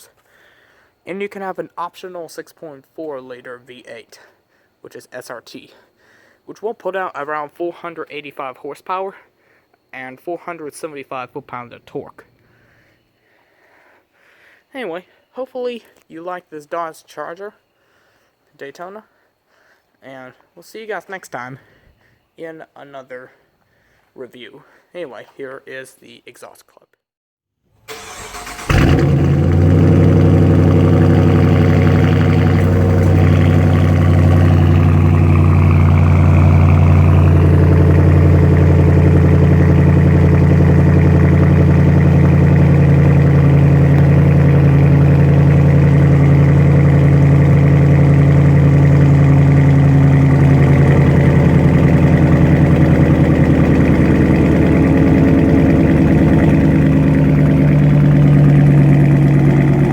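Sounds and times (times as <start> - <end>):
car engine starting and idling: 27.9 - 59.9.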